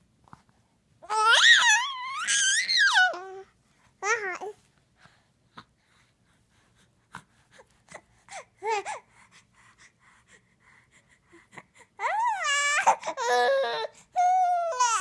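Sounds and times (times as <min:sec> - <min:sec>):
baby whimpering and crying: 0:01.0 - 0:04.6, 0:11.4 - 0:15.0.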